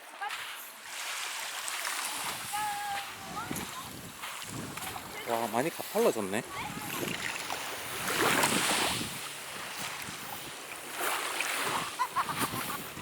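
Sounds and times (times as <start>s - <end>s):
sea waves washing on beach: 0.0s - 13.0s
wind on microphone: 2.2s - 5.7s, 6.4s - 13.0s.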